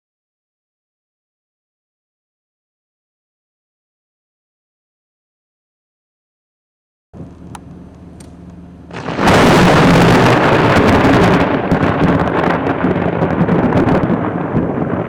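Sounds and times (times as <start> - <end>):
thunder crack and rumble: 8.9 - 15.0.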